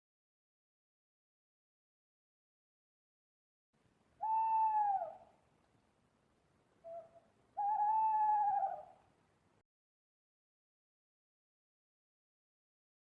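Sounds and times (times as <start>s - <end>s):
owl hooting: 4.2s - 5.4s, 6.8s - 9.0s.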